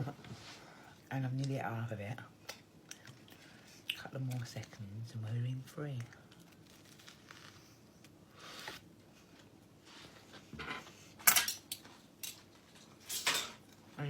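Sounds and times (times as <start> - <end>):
crockery and cutlery clinking: 10.6 - 13.7.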